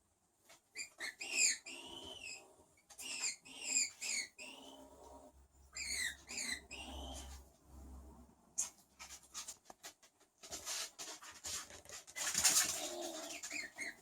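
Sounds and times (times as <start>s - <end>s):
skunk squeaky chirps: 0.8s - 2.4s, 3.0s - 4.8s, 5.7s - 7.4s, 12.9s - 14.0s.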